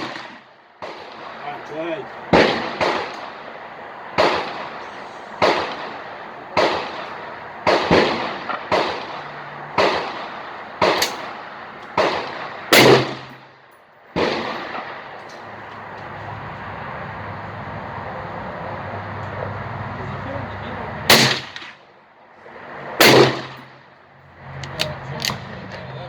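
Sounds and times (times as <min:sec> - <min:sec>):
gunshots: 0:00.0 - 0:13.5, 0:14.2 - 0:15.2, 0:21.1 - 0:21.8, 0:23.0 - 0:23.8.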